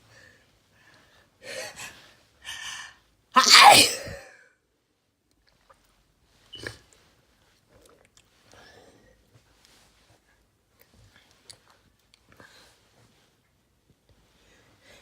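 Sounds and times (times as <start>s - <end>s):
person sneezing: 3.4s - 4.3s.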